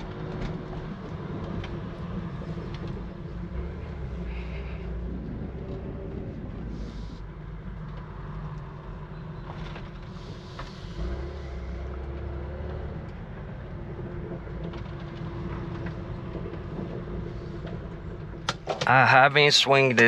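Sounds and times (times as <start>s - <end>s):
car engine and road rumble: 0.0s - 20.0s.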